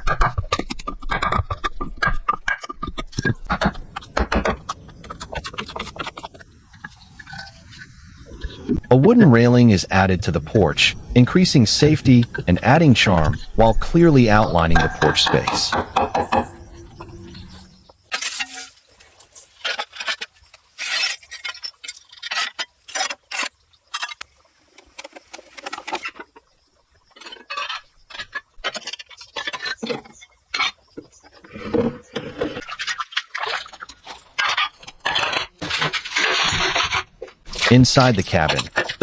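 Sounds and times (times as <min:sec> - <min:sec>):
hand tools scraping and knocking: 0:00.0 - 0:18.7, 0:27.2 - 0:39.0.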